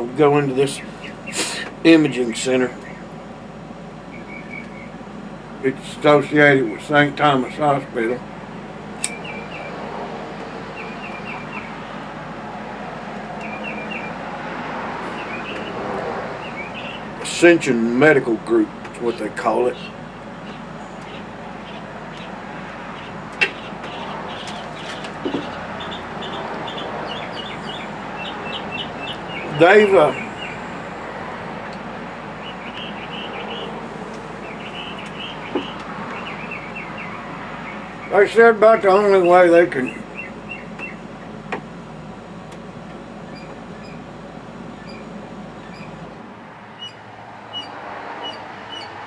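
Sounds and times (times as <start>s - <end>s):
steady background rumble: 0.0s - 47.6s
steady background noise: 0.0s - 49.0s
small birds chirping: 0.6s - 3.2s, 4.0s - 5.0s, 7.2s - 17.6s, 18.8s - 38.3s, 38.9s - 41.5s, 43.2s - 44.2s, 44.8s - 46.1s, 46.8s - 49.0s
small bird chirping: 16.4s - 17.1s, 19.7s - 30.6s, 32.4s - 38.1s, 46.8s - 49.0s.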